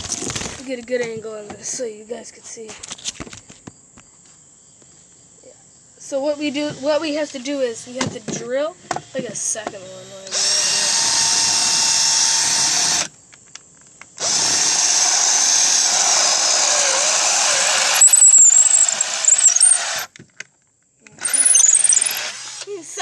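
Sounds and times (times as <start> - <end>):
power drill boring: 9.0 - 13.1, 14.2 - 20.1, 21.2 - 22.7
drill bit squeaking: 14.2 - 20.1, 21.2 - 22.7.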